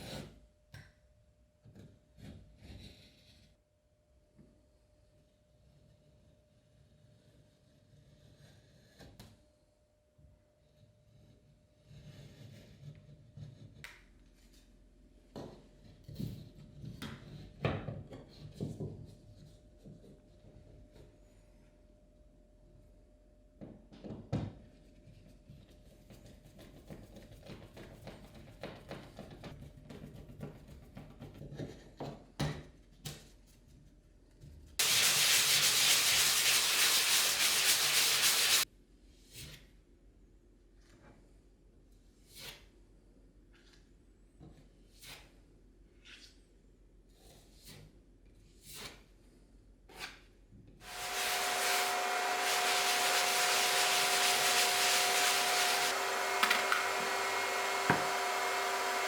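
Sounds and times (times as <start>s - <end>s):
scraping and rubbing plasterboard: 0.0s - 0.4s, 1.6s - 3.6s, 5.6s - 9.4s, 10.6s - 14.7s, 34.8s - 38.7s, 49.9s - 59.0s.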